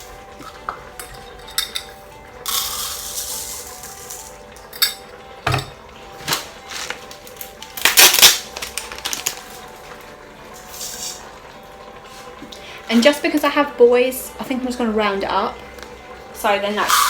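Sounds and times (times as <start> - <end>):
dry rice rattling pour: 2.4 - 4.4.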